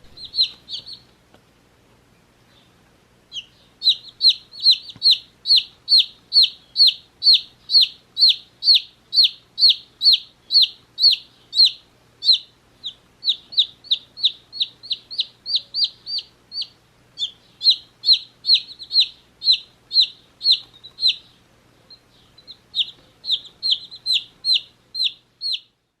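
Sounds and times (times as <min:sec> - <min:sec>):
chicks peeping: 0:00.0 - 0:01.2, 0:02.4 - 0:25.7.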